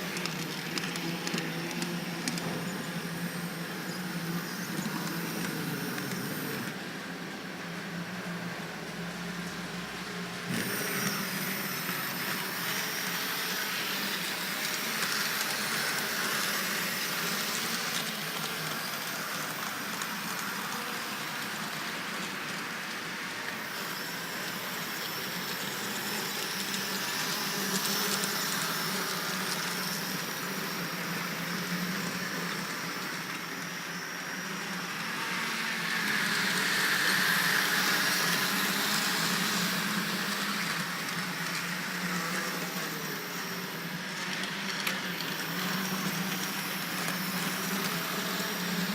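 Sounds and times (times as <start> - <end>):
electric motor hum: 0.0 - 48.9
small wheels hissing on rails: 0.0 - 48.9.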